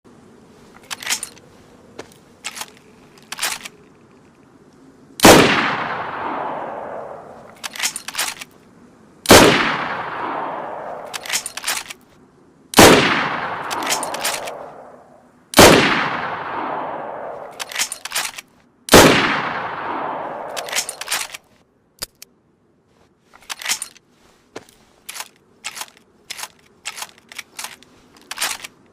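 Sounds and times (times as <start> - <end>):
rifle bolt metallic clicks: 0.8 - 1.4, 2.0 - 4.4, 5.2 - 8.6, 9.3 - 12.1, 12.8 - 15.0, 15.6 - 22.3, 23.4 - 24.0, 24.6 - 28.9
rifle shots with echo: 5.2 - 7.4, 9.3 - 11.6, 12.8 - 18.0, 18.9 - 21.4.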